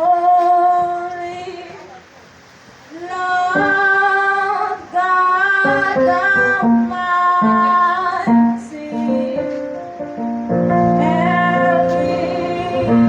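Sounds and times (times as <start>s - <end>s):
woman singing: 0.0s - 2.0s, 2.9s - 9.9s, 10.7s - 13.0s
instrumental accompaniment: 5.6s - 13.0s.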